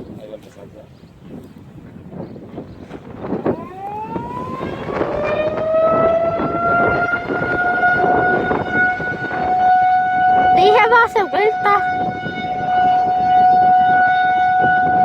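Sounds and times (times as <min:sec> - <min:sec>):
tornado siren winding up: 0:03.4 - 0:15.0.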